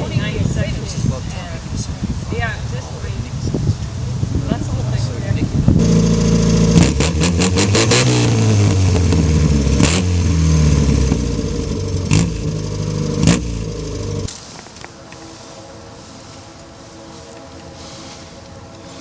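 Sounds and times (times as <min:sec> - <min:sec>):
car engine running: 0:02.8 - 0:14.3.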